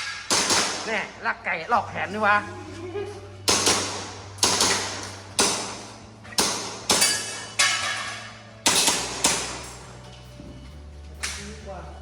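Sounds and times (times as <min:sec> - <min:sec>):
airsoft pistol shots: 0:00.0 - 0:00.9, 0:03.5 - 0:07.3.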